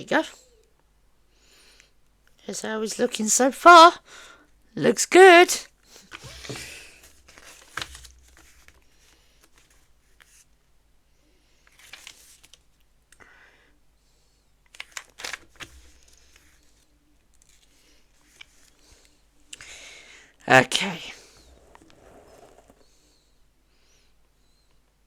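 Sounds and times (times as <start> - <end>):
plastic pieces clicking: 14.7 - 16.6.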